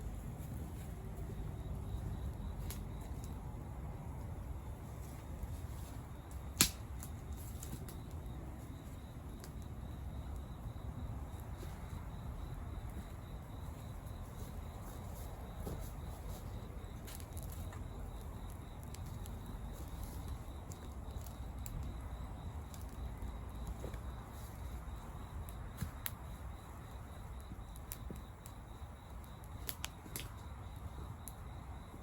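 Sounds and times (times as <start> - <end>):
steady low rumble: 0.0 - 6.8
campfire crackling and popping: 0.3 - 32.0.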